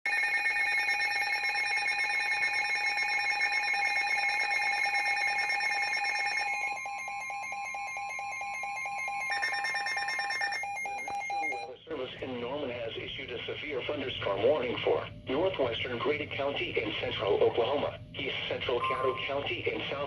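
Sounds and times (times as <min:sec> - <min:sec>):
pulsing electronic alarm tone: 0:00.1 - 0:11.7, 0:18.8 - 0:19.4.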